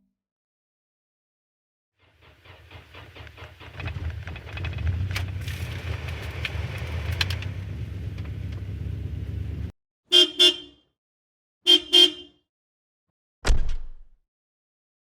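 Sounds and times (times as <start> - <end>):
low rumble with clicks: 2.1 - 9.7
car horn toots: 10.1 - 10.8, 11.7 - 12.4.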